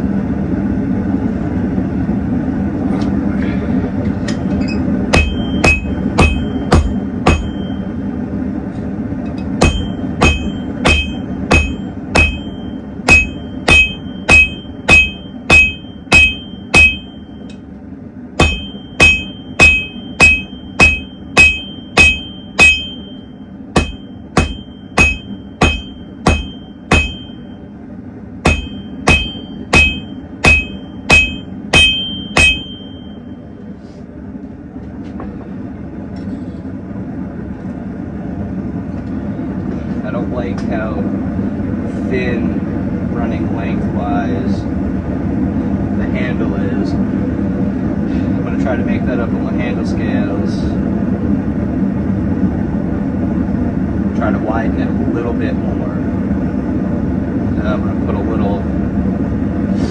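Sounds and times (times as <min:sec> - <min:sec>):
steady low hum: 0:00.0 - 0:59.9
anvil ringing: 0:05.1 - 0:08.0, 0:09.6 - 0:17.6, 0:18.4 - 0:27.6, 0:28.4 - 0:33.4
hammer striking steel on anvil: 0:05.1 - 0:08.0, 0:09.6 - 0:17.6, 0:18.4 - 0:27.6, 0:28.4 - 0:33.3.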